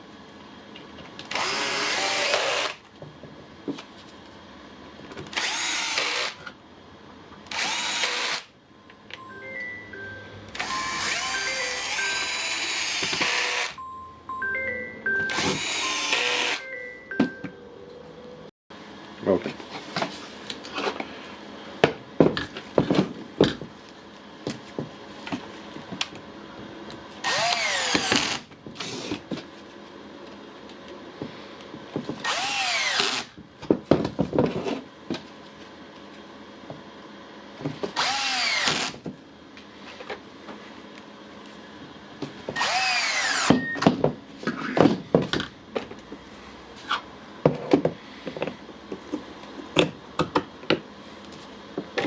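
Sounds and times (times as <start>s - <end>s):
impact wrench motor whine: 1.3s - 2.8s, 5.3s - 6.5s, 7.5s - 8.5s, 10.5s - 13.8s, 15.1s - 17.4s, 27.2s - 29.2s, 32.2s - 33.4s, 37.9s - 39.1s, 42.5s - 43.9s.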